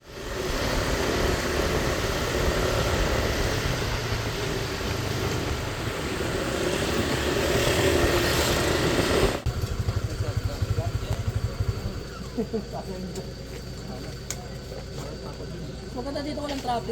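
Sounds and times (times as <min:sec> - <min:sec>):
vehicle engine and road rumble: 0:00.0 - 0:16.9.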